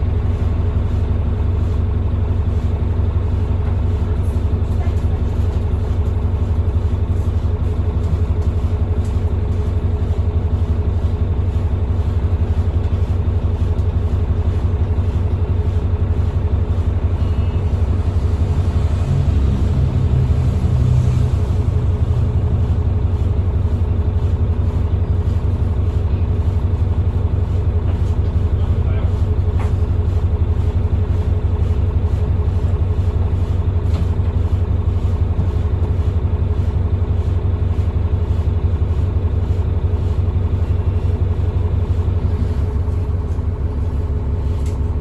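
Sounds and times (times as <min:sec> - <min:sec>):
bus diesel engine running: 0:00.0 - 0:45.0.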